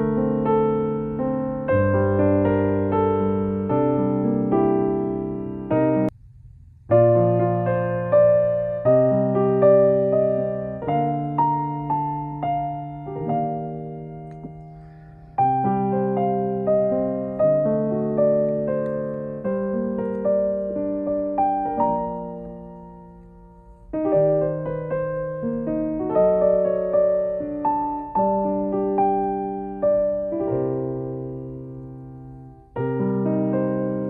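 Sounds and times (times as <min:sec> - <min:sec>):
slow piano music: 0:00.0 - 0:06.2, 0:06.8 - 0:34.0.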